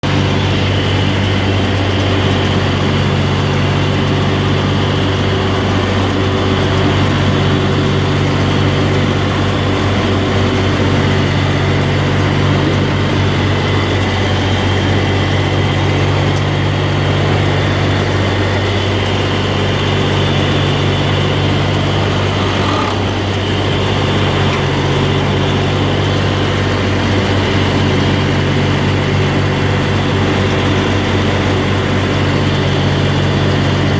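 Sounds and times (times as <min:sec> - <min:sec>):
baler machinery working: 0:00.0 - 0:33.9
tractor engine running: 0:00.0 - 0:33.9.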